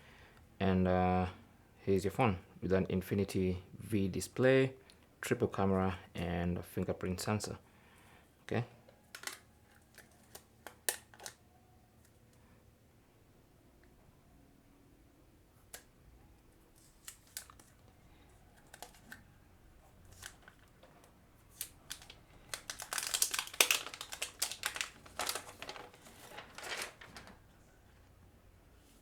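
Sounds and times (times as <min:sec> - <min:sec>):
plastic film crinkling: 0:09.1 - 0:11.4, 0:16.7 - 0:19.2, 0:20.0 - 0:27.6.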